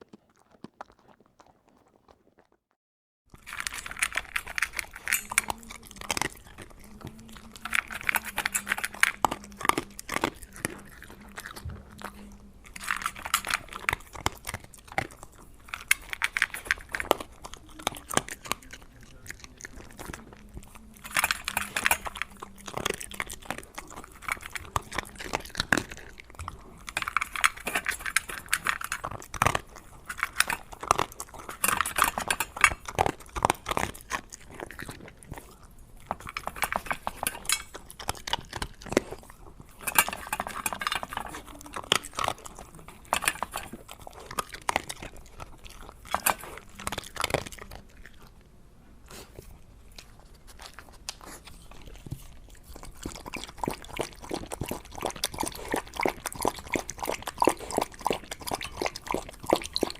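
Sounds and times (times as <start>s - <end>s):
crunching crisp food: 0.0s - 48.4s, 49.1s - 59.9s.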